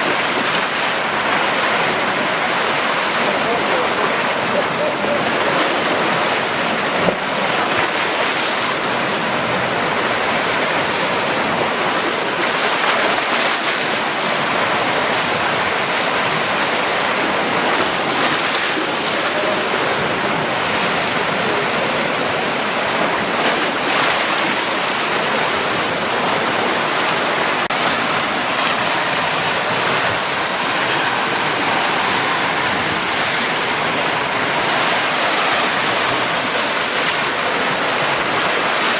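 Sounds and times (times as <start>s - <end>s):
surf against rocky shore: 0.0s - 38.9s.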